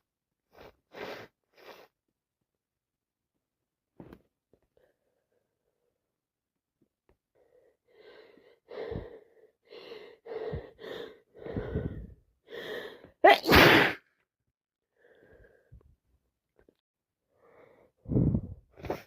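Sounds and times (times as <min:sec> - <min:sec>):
halting in-breaths: 0:07.5 - 0:13.2
person sneezing: 0:13.2 - 0:14.0.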